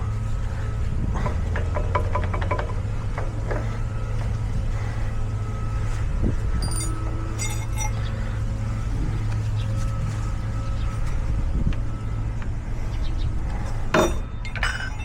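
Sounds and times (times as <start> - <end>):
vehicle engine humming: 0.0 - 15.0
metallic clinks of brake parts: 6.6 - 8.0, 13.9 - 15.0.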